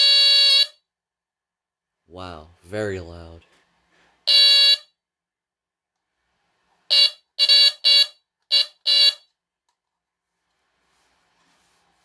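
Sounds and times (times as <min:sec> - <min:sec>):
smoke alarm horn blasts: 0:00.0 - 0:00.8, 0:04.3 - 0:05.0, 0:06.9 - 0:09.4.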